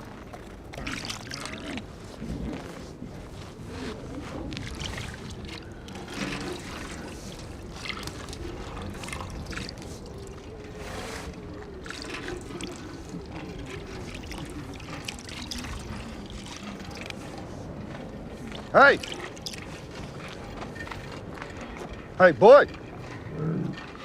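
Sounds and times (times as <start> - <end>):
water pouring and splashing: 0.0 - 23.2.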